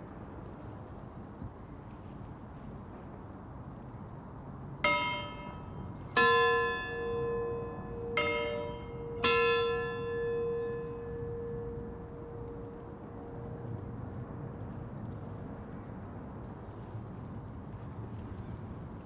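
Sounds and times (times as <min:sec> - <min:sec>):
low outdoor background: 0:00.0 - 0:19.0
distant church bells striking: 0:04.7 - 0:16.8.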